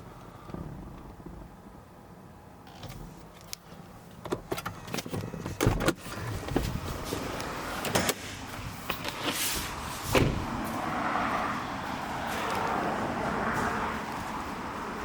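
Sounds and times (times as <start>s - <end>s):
car door shutting: 4.2s - 10.7s.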